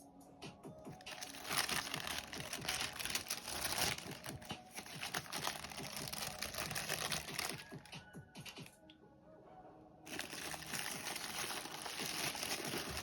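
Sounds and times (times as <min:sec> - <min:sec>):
tissue paper crinkling: 0:01.0 - 0:07.9, 0:10.1 - 0:13.0.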